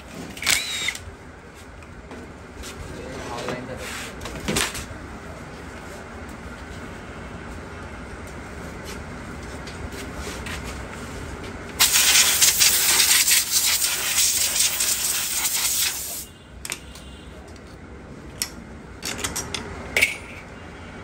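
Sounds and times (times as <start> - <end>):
pressurised spray hissing: 11.8 - 16.3.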